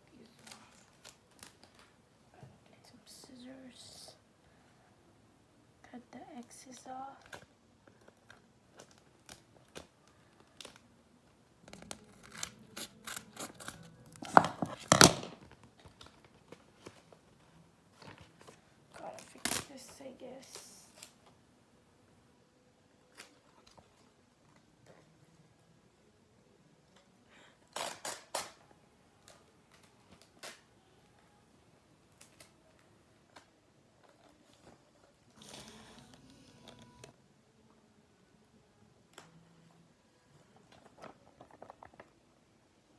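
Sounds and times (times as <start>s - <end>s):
paper and tape crackling: 0.2s - 2.0s, 11.6s - 17.2s
scissors snipping paper: 11.8s - 14.4s.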